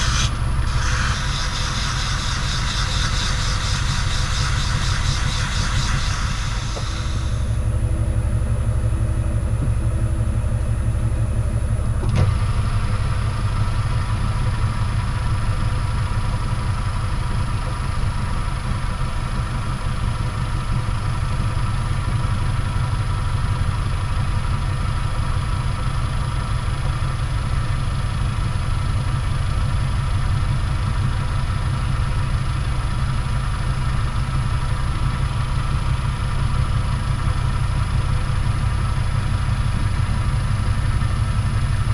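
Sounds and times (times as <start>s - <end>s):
lathe humming and whining: 0.0s - 9.6s.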